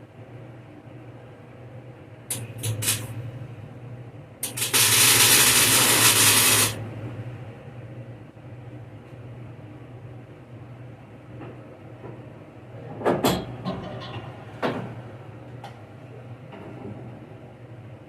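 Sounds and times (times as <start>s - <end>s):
loud even hiss: 4.4s - 6.8s.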